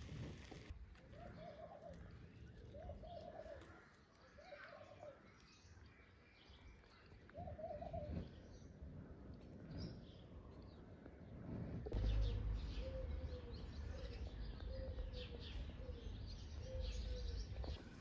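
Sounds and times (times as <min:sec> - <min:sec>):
dove cooing: 0:01.1 - 0:02.0, 0:02.7 - 0:03.7, 0:07.4 - 0:08.3, 0:12.0 - 0:17.8
small birds chirping: 0:01.1 - 0:18.0
low rumble: 0:11.3 - 0:17.8.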